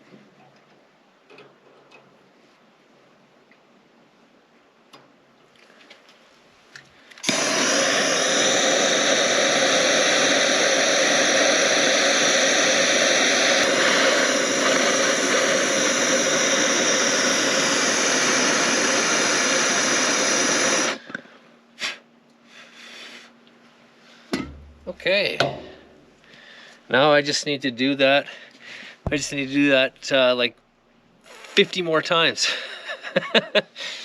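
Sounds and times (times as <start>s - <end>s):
heat gun blowing: 7.1s - 22.0s, 28.7s - 30.4s.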